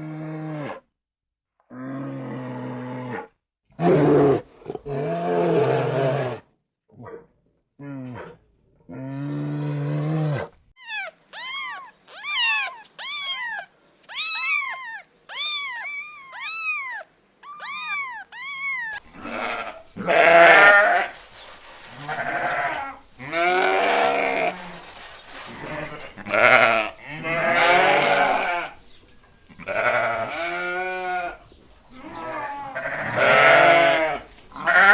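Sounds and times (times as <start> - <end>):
livestock bleating: 9.0 - 21.2, 21.9 - 28.8, 29.5 - 34.9
high-pitched chirping calls: 10.8 - 19.0.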